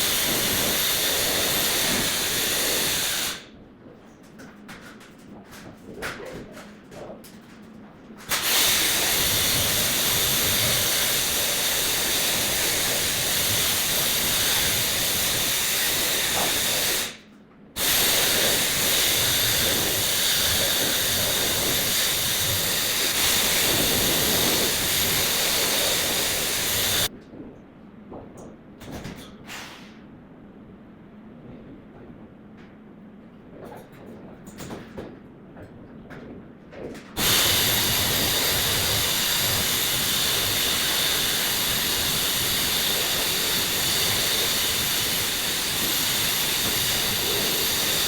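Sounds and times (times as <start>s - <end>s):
pressurised gas hissing: 0.0s - 3.4s, 8.3s - 17.2s, 17.8s - 27.1s, 37.2s - 48.0s.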